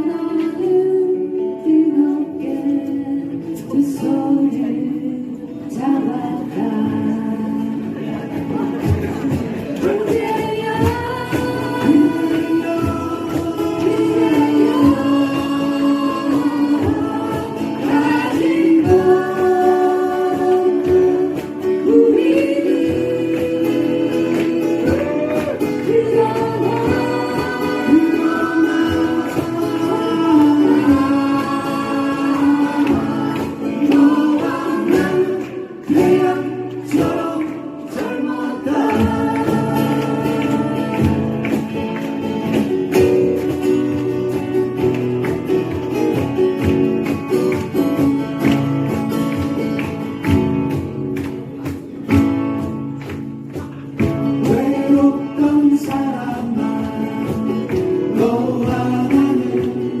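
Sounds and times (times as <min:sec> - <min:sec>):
person singing: 0:00.0 - 0:42.1, 0:53.5 - 1:00.0
strummed acoustic guitars: 0:00.0 - 1:00.0.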